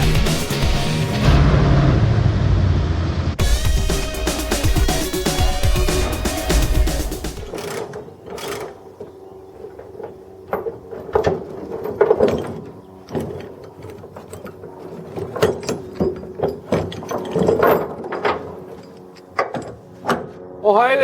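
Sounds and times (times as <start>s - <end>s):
mechanical clicking and clunking: 7.4s - 20.3s.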